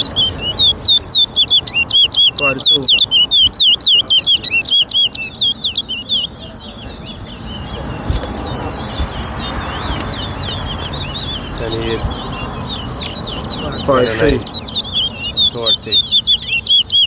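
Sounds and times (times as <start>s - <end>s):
background noise: 0.0s - 17.0s
faint overlapping bird whistles: 0.0s - 17.0s
finch singing whistled notes: 0.0s - 17.0s.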